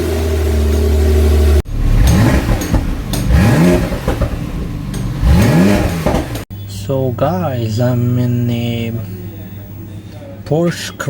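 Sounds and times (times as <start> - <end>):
car engine revving: 0.0 - 6.5.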